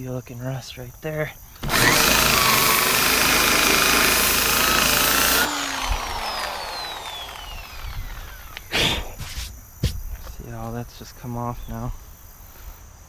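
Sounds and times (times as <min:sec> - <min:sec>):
wire wheel grinding metal: 0:01.6 - 0:08.4.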